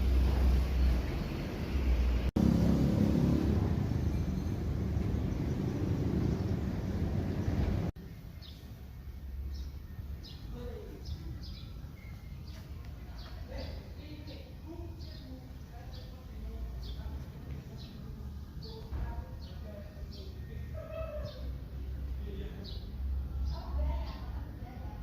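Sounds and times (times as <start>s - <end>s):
wind buffeting microphone: 0.0s - 7.9s
small birds chirping: 3.6s - 25.0s.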